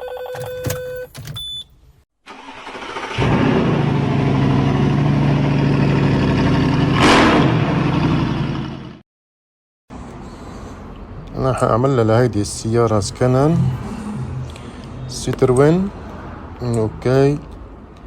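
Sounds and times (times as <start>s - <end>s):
engine running: 2.4s - 9.0s.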